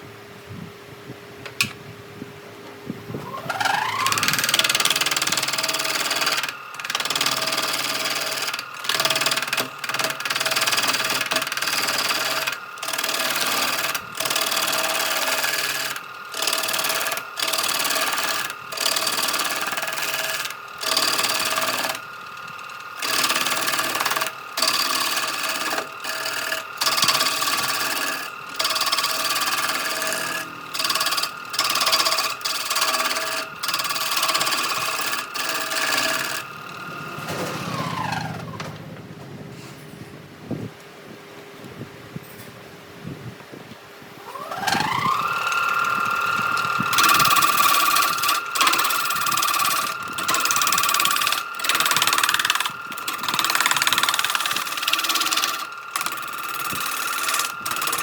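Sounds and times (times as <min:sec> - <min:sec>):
power tool motor whine: 0:03.0 - 0:40.0, 0:44.2 - 0:58.0
abrasive rasp on wood: 0:23.0 - 0:36.5, 0:46.8 - 0:58.0.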